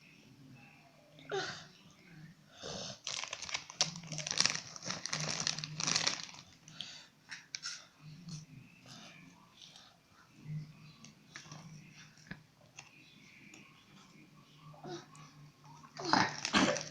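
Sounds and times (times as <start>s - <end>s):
snack bag crinkling: 3.0s - 6.6s, 16.2s - 16.9s.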